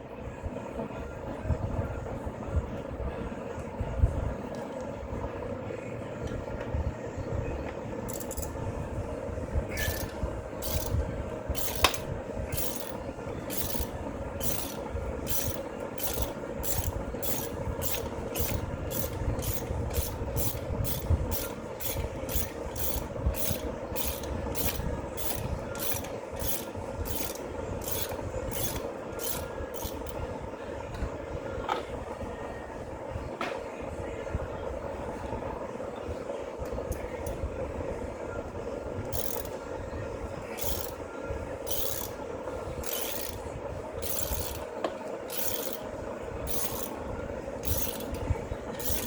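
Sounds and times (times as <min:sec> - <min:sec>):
hand ratchet rasping: 0:08.1 - 0:08.5, 0:09.8 - 0:11.0, 0:11.6 - 0:30.2, 0:39.1 - 0:39.5, 0:40.6 - 0:41.0, 0:41.7 - 0:42.2, 0:42.8 - 0:43.4, 0:44.0 - 0:44.6, 0:45.3 - 0:45.8, 0:46.5 - 0:47.0, 0:47.6 - 0:48.2, 0:48.8 - 0:49.0.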